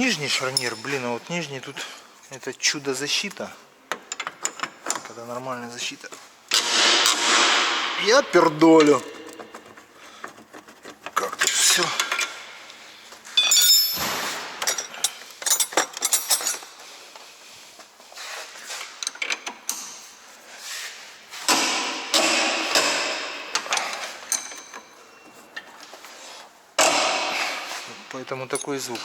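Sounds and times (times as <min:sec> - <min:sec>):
metal tools clinking: 0:00.0 - 0:02.3, 0:06.5 - 0:17.0, 0:22.8 - 0:25.9, 0:26.8 - 0:29.0
rubbing and scraping: 0:06.5 - 0:13.3, 0:25.8 - 0:29.0.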